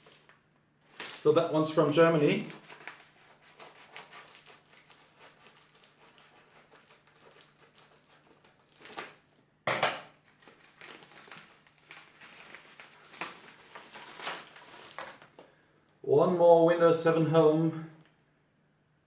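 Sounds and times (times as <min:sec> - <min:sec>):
packaging tearing: 0:00.0 - 0:09.3, 0:10.2 - 0:15.4
packaging crinkling and rustling: 0:00.0 - 0:15.6.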